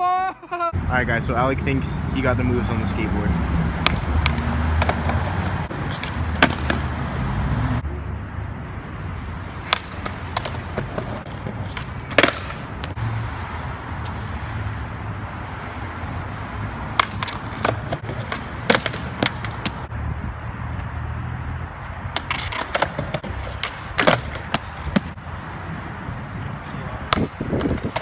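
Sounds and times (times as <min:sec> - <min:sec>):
skateboard wheels rolling on pavement: 0:01.3 - 0:28.0
skateboard deck clacking on ground: 0:03.8 - 0:06.9, 0:09.7 - 0:13.0, 0:17.0 - 0:19.8, 0:22.1 - 0:25.2, 0:27.1 - 0:28.0.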